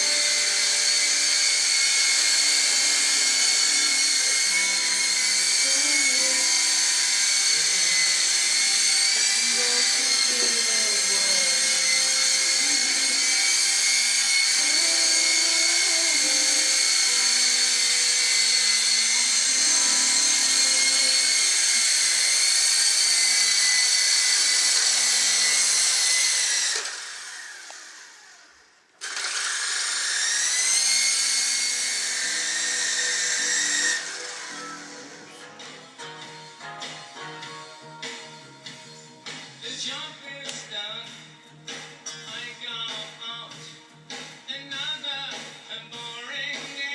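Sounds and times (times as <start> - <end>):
toy helicopter motor whine: 0.0 - 35.4.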